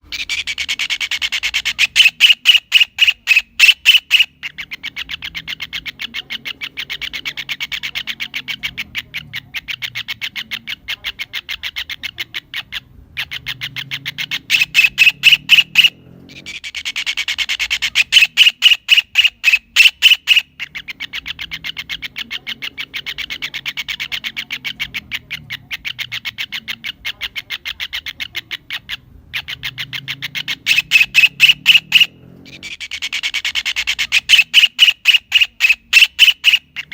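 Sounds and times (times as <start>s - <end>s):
kingfisher calling rapid notes: 0.0s - 36.9s.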